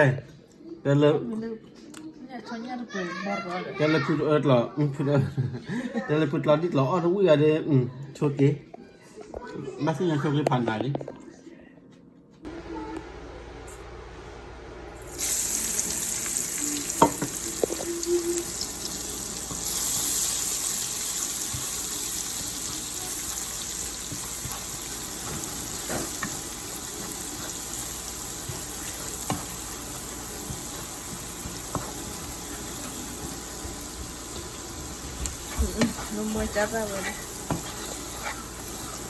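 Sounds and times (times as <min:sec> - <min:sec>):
food sizzling in oil: 0:15.0 - 0:39.0
stirring utensil knocks: 0:30.4 - 0:39.0.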